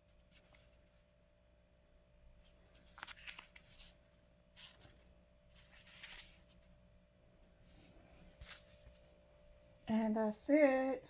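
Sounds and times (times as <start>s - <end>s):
rustling packaging: 2.4s - 6.8s.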